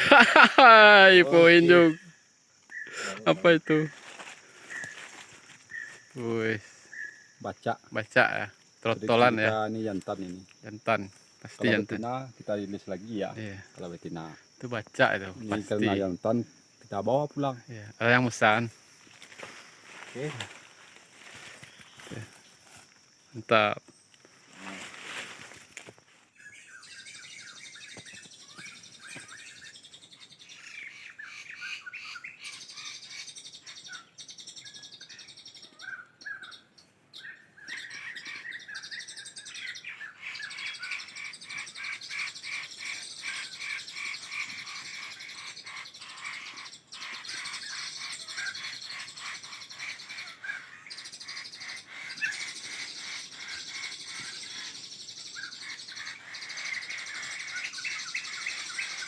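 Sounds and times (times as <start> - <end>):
birds chirping: 0.0 - 59.0
fast repeated bird notes: 2.7 - 5.1, 37.6 - 59.0.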